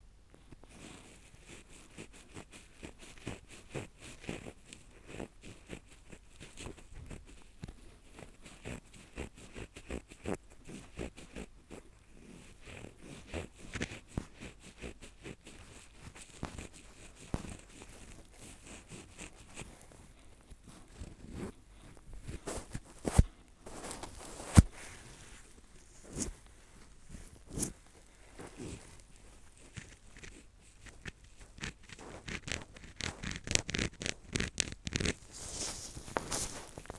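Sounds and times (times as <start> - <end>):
ear pick scratching in ear: 22.2 - 36.9.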